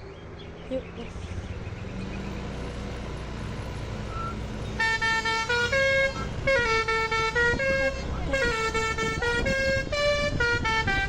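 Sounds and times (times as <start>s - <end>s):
bus engine running: 0.0s - 11.0s
multi-tone bus horn tune: 4.1s - 11.0s.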